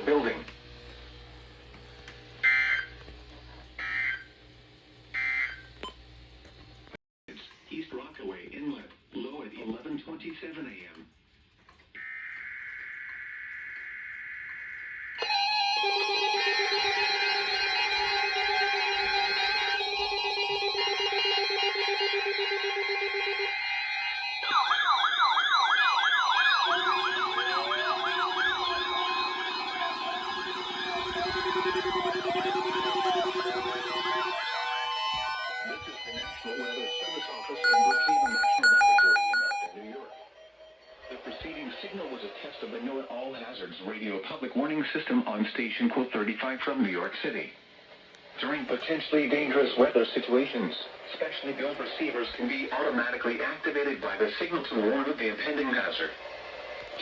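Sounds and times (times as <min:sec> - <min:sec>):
siren yelping: 0:02.4 - 0:02.9, 0:12.0 - 0:41.0
second siren: 0:12.0 - 0:40.9
warbling two-tone data bursts: 0:22.4 - 0:39.8.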